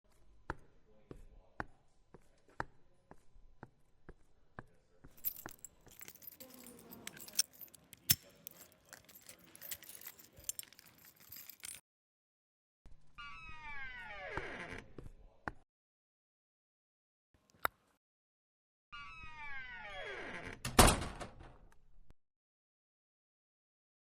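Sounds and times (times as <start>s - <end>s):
bright jangling rattle: 5.2s - 11.8s.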